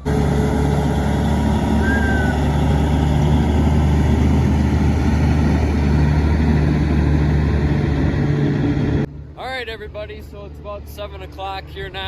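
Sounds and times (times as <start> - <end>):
diesel engine droning: 0.0 - 9.1.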